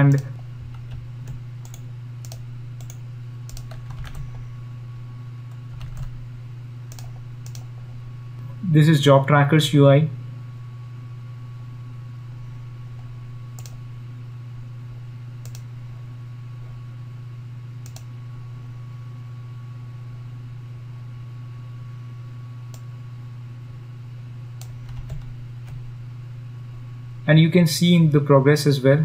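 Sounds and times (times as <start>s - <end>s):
low electrical hum: 0.0s - 29.0s
isolated clicks: 0.1s - 4.2s, 6.9s - 7.7s, 13.5s - 13.8s, 15.4s - 15.7s, 17.8s - 18.1s.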